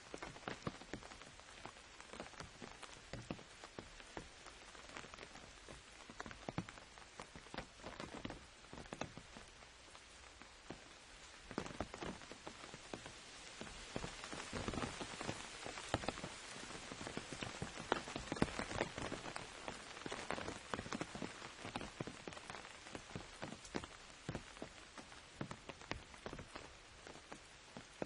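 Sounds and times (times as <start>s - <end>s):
rain on an umbrella: 0.0s - 28.0s.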